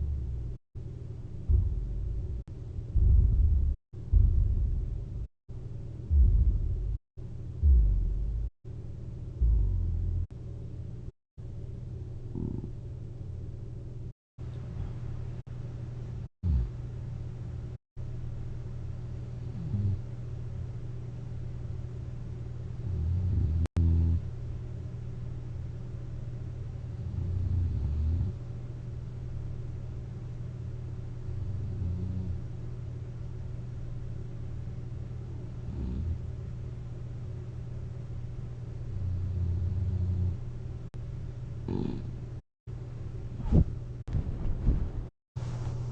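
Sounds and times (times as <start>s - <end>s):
steady low hum: 0.0s - 45.9s
person snoring: 9.4s - 10.3s, 12.3s - 12.8s, 16.4s - 16.8s, 41.7s - 42.1s.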